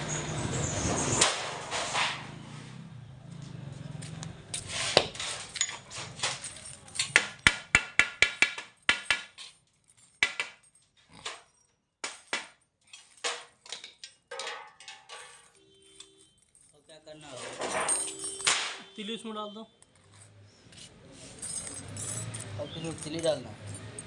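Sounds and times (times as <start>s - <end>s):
metal tools knocking and clinking: 4.5s - 19.0s, 19.8s - 24.0s.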